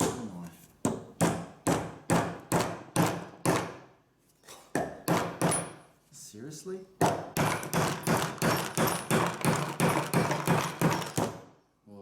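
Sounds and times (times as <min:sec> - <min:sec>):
hammer blows on concrete: 0:07.0 - 0:11.5.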